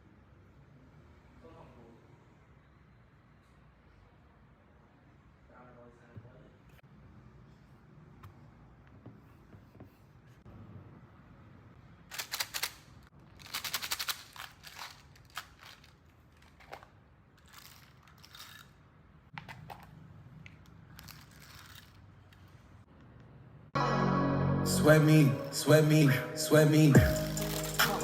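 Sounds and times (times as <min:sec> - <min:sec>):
handling crackling and clicking: 0:12.1 - 0:22.5.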